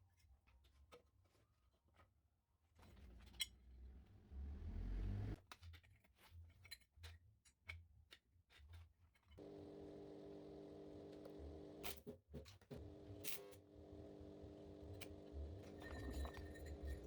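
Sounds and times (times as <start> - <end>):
faint electric hum: 12.8 - 17.0.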